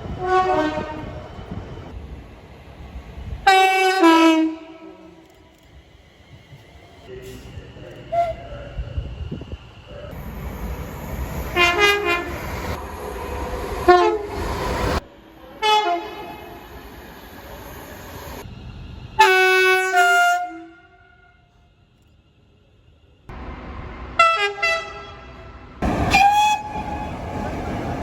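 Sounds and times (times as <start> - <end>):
low rumble of passing trains: 0.0 - 28.0
train horn chord blasts: 0.2 - 1.2, 24.2 - 26.9.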